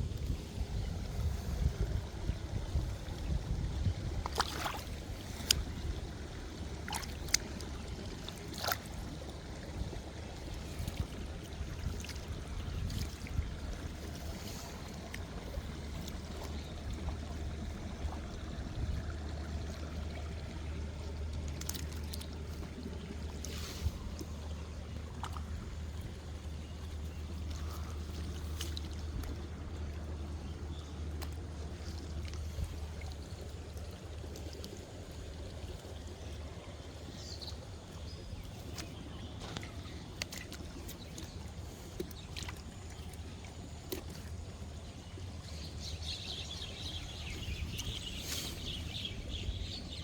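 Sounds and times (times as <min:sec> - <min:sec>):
outdoor water: 0:00.0 - 0:50.0
steady low rumble: 0:00.0 - 0:50.0
short splashes or knocks: 0:04.2 - 0:05.7.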